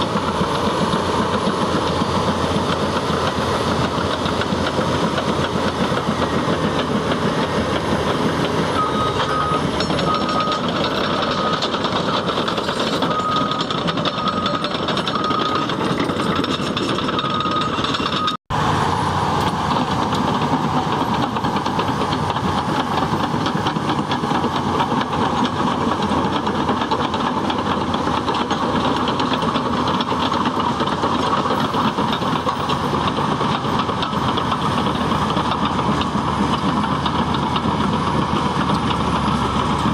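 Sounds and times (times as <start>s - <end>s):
bulldozer diesel engine running: 0.0s - 39.9s.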